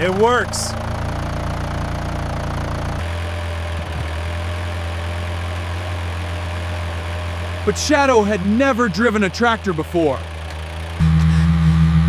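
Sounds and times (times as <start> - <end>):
tractor engine idling: 0.0 - 11.6.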